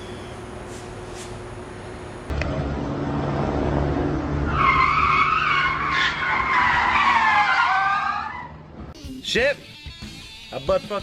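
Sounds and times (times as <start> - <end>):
tires squealing: 4.2 - 8.9.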